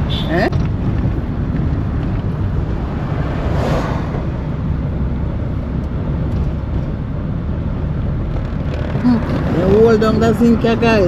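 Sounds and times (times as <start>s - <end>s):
car road and engine rumble: 0.0s - 11.0s
wind buffeting microphone: 0.0s - 11.0s.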